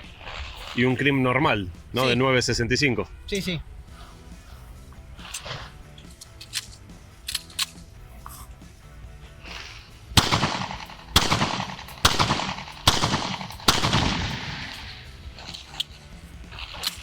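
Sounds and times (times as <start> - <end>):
small clicks: 5.2 - 7.8
pistol shots echoing: 10.2 - 15.1.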